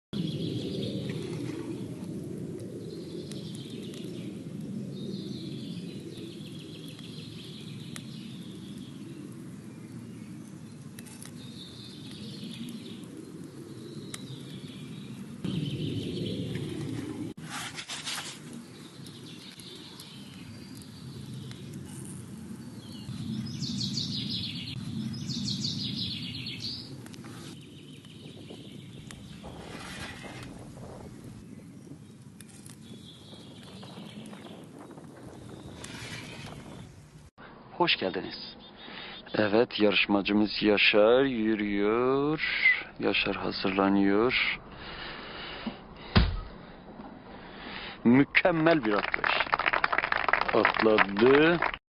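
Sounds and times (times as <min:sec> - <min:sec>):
small birds chirping: 0:02.7 - 0:16.9, 0:18.4 - 0:37.0, 0:37.9 - 0:41.9.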